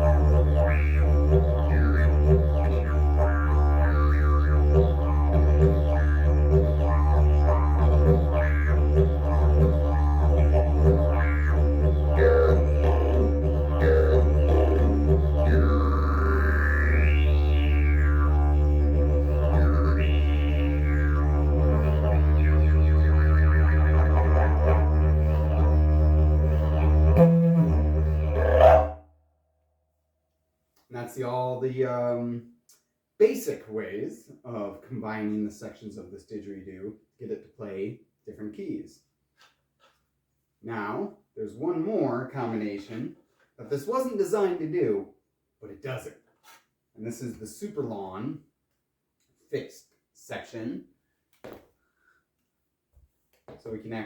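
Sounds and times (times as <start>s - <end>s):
didgeridoo drone: 0.0s - 28.9s.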